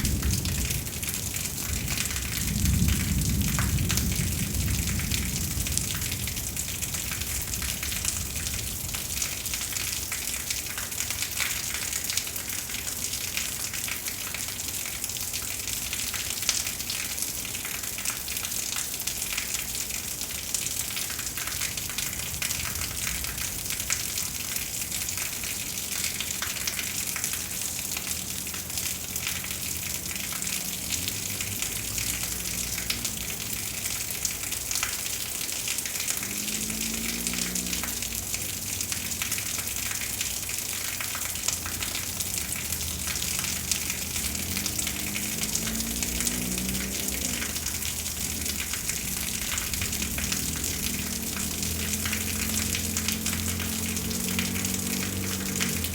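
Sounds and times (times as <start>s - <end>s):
low thunder rumble: 0.0s - 10.0s, 21.6s - 24.8s, 42.0s - 52.1s
steady rain: 0.0s - 55.9s.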